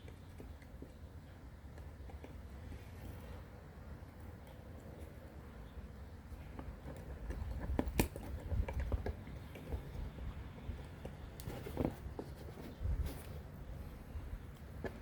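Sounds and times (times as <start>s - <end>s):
light clicks and taps of tools: 0.0s - 3.2s.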